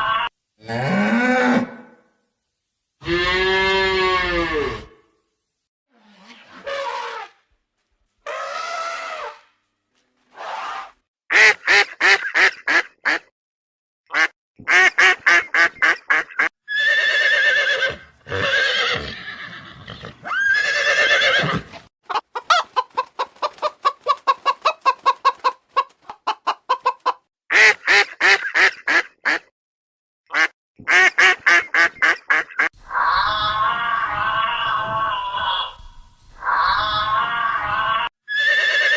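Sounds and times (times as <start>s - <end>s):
poultry calling: 8.3s - 9.5s, 16.7s - 27.1s, 32.9s - 38.9s.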